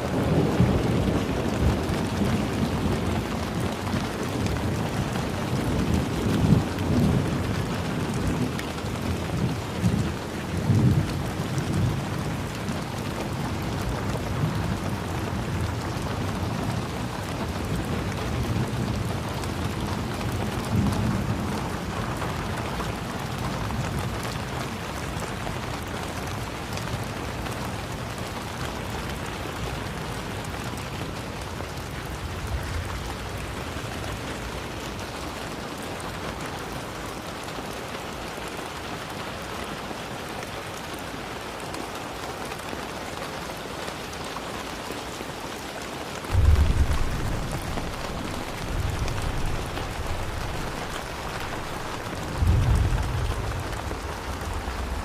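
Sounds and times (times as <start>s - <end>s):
low rumble of thunder: 0.0s - 25.5s, 46.3s - 55.0s
steady rain falling: 0.0s - 55.0s.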